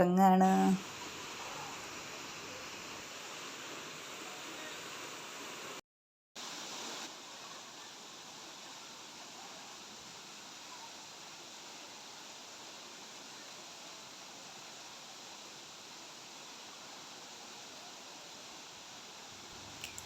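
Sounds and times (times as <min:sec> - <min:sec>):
waterfall rushing: 0:00.8 - 0:05.8.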